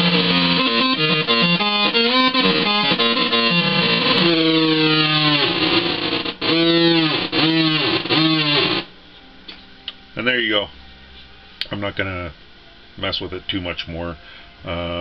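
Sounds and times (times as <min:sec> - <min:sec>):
fuzz electric guitar: 0:00.0 - 0:08.9
faint hum: 0:00.0 - 0:15.0.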